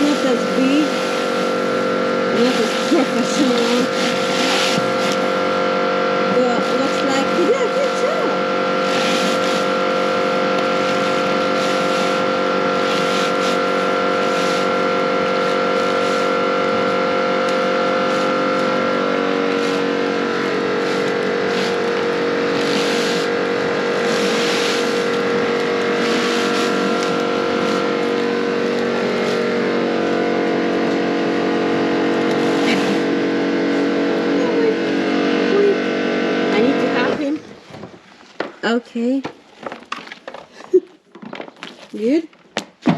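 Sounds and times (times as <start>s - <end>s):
pressure washer motor drone: 0.0s - 38.1s
water jet hissing: 6.3s - 30.0s.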